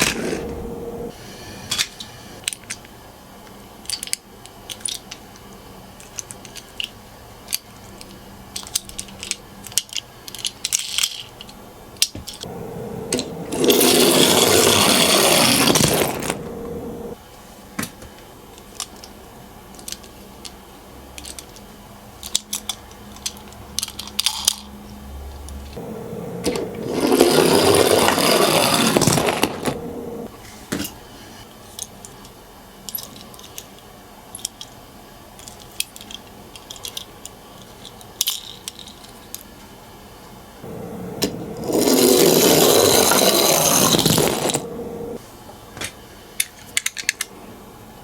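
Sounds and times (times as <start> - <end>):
toy cars clicking and clattering: 3.8 - 12.5, 18.6 - 24.7, 31.8 - 34.8, 35.4 - 39.5, 46.4 - 47.3.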